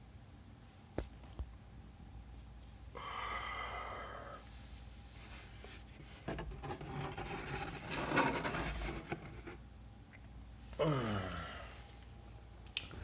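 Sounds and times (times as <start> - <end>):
handling rustling and scraping: 4.9 - 9.6
man groaning: 10.8 - 11.7.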